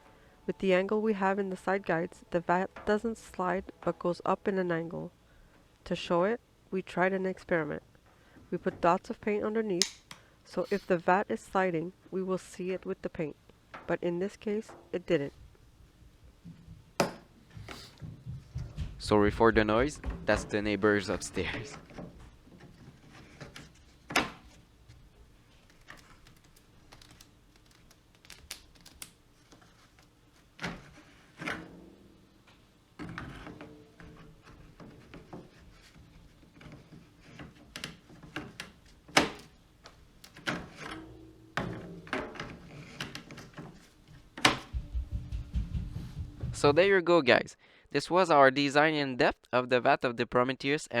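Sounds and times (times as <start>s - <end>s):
thuds and knocks from upstairs: 16.4s - 20.8s, 44.4s - 46.8s.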